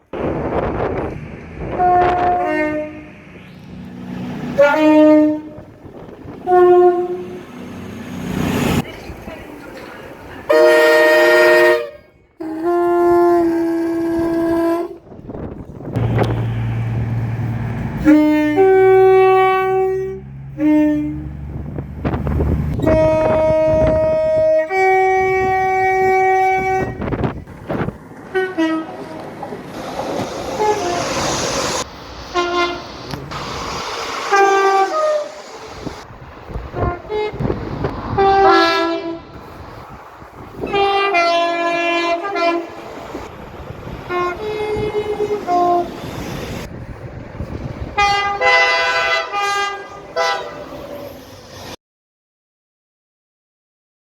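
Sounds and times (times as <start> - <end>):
train horn blasts: 1.7 - 3.3, 4.4 - 7.7, 10.5 - 15.2, 17.9 - 21.5, 22.8 - 27.4, 28.3 - 29.4, 30.6 - 31.3, 32.3 - 33.2, 34.3 - 35.5, 36.7 - 39.4, 40.6 - 42.8, 44.1 - 46.2, 48.0 - 50.8
low engine rumble: 12.2 - 49.3.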